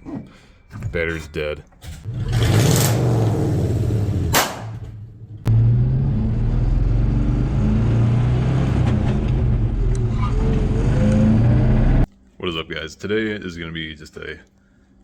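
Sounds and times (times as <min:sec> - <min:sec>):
vehicle engine rumbling: 0:00.0 - 0:12.1.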